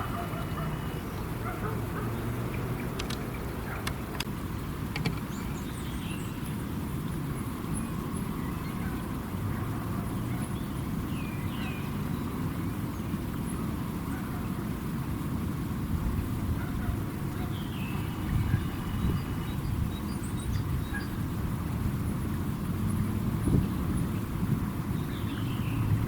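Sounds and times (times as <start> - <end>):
sharp clicks: 2.9 - 4.3, 4.9 - 5.3
small birds chirping: 5.1 - 9.2, 9.8 - 14.5, 16.6 - 21.3, 22.6 - 26.0.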